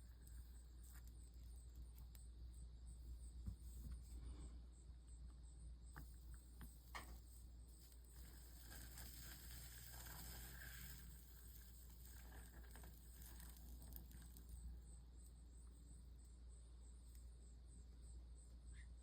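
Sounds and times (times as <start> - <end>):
flux sizzling under soldering iron: 0.0 - 2.4, 6.0 - 15.3.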